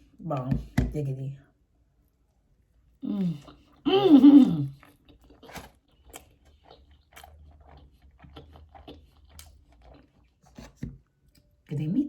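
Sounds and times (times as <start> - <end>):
person chewing food: 3.1 - 11.6.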